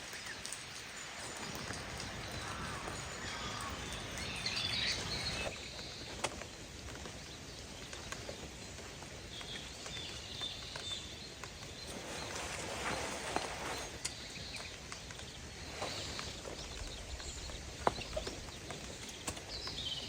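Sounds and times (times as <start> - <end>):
rain patter: 0.0 - 20.0
small bird chirping: 0.1 - 5.6.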